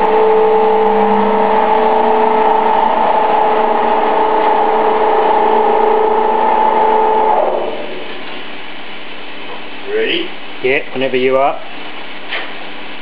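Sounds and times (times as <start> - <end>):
machine motors whining: 0.0 - 8.4.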